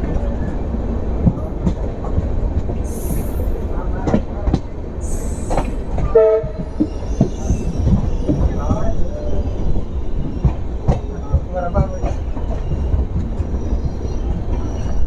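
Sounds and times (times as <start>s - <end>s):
train rumble: 0.0s - 15.0s
high hisses: 5.0s - 6.0s
train horn blast: 6.1s - 6.6s.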